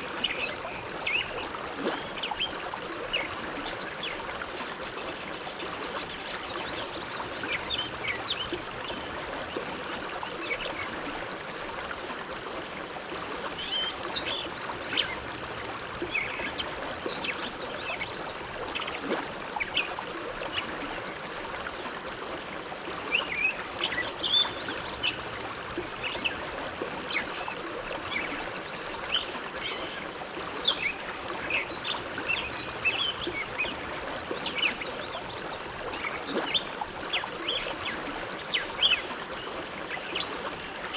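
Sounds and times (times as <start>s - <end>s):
water splashing and gurgling: 0.0s - 40.9s.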